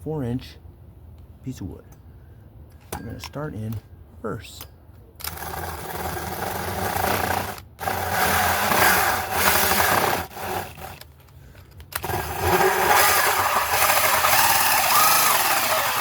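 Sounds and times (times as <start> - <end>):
drill with hole saw cutting wood: 5.3 - 11.0, 12.0 - 16.0.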